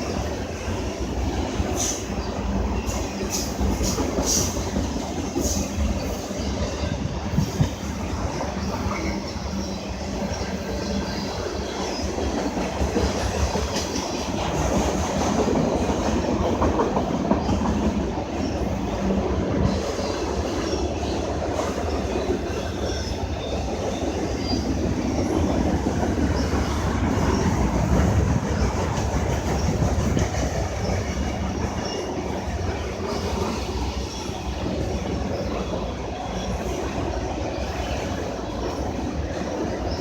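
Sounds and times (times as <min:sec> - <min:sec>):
train wheels clacking on rails: 0:00.0 - 0:40.0.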